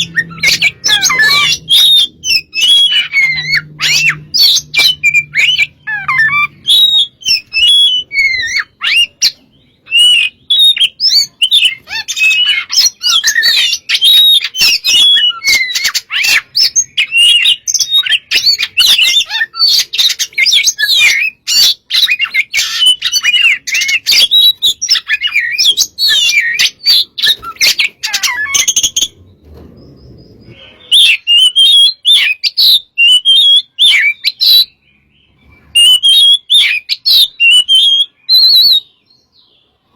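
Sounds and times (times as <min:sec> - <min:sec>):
bird singing: 0:00.0 - 0:39.9.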